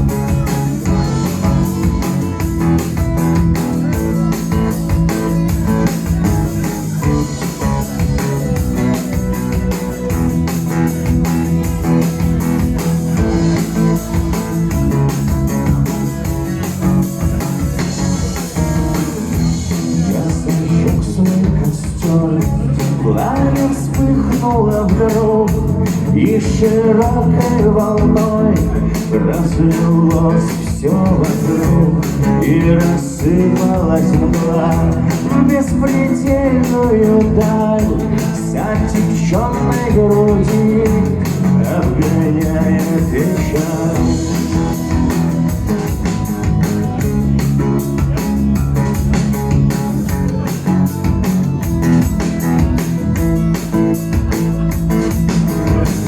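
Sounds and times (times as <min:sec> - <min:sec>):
man singing: 0:00.0 - 0:10.1, 0:17.4 - 0:46.1
acoustic guitar: 0:00.0 - 0:56.0.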